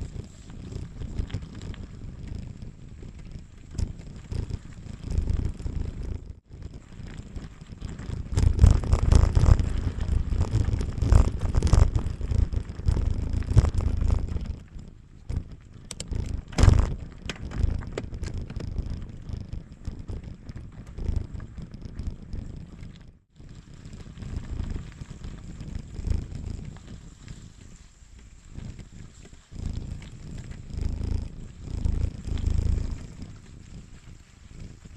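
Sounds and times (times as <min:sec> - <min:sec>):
bike rattling and knocking: 0:00.0 - 0:26.9
wind rumbling on microphone: 0:00.0 - 0:34.9
bike tyres crunching on stones: 0:06.7 - 0:14.8.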